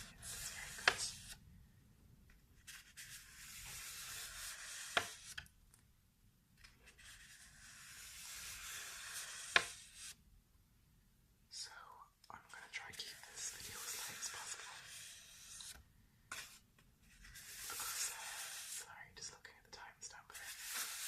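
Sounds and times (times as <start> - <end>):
paper rubbing: 0.0 - 1.4, 2.6 - 5.4, 6.8 - 10.2, 13.4 - 18.8, 20.4 - 21.0.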